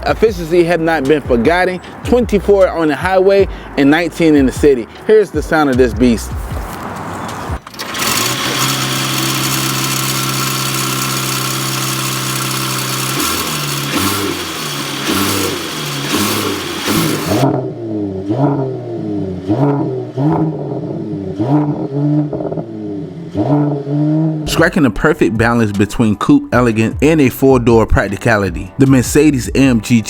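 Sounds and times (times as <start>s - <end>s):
car engine revving: 6.6s - 24.8s
car engine idling: 7.0s - 24.7s.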